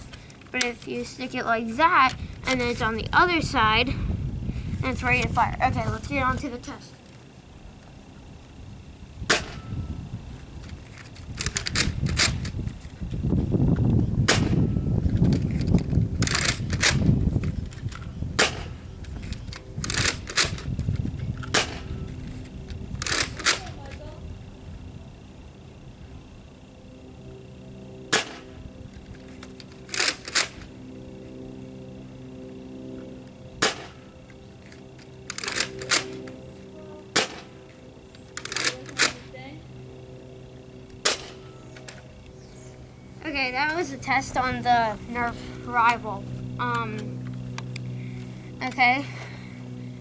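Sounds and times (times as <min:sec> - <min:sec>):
wind rumble on microphone: 0:02.0 - 0:06.6, 0:08.4 - 0:26.6
toy blaster firing snap: 0:09.3 - 0:09.7, 0:14.2 - 0:14.6, 0:17.7 - 0:20.7, 0:21.4 - 0:21.9, 0:23.0 - 0:24.0, 0:28.1 - 0:28.6, 0:29.4 - 0:30.7, 0:33.6 - 0:34.0, 0:35.0 - 0:36.4, 0:37.1 - 0:37.6, 0:38.3 - 0:39.3, 0:41.0 - 0:42.0
toy blaster plastic clacks: 0:10.6 - 0:12.7, 0:15.1 - 0:21.8, 0:22.7 - 0:24.0, 0:28.2 - 0:30.7, 0:34.6 - 0:36.4, 0:38.1 - 0:39.3
rattle of clicks: 0:10.6 - 0:13.2, 0:15.0 - 0:24.0, 0:28.9 - 0:30.7, 0:33.7 - 0:36.4, 0:38.1 - 0:39.3.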